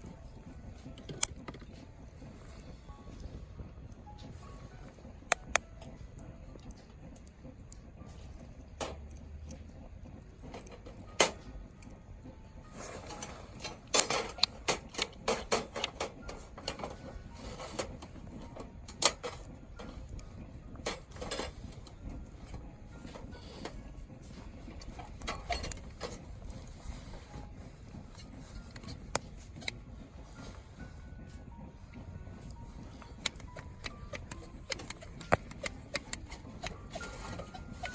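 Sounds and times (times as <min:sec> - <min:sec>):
rapid clicking and rattling: 0:00.0 - 0:37.9
sharp clicks and knocks: 0:00.8 - 0:02.2, 0:04.0 - 0:12.0, 0:13.1 - 0:29.8, 0:32.4 - 0:37.9.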